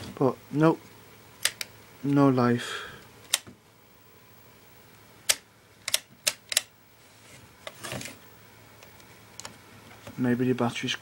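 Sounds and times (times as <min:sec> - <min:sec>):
sharp plastic clicks: 0:01.4 - 0:01.7, 0:05.3 - 0:06.7.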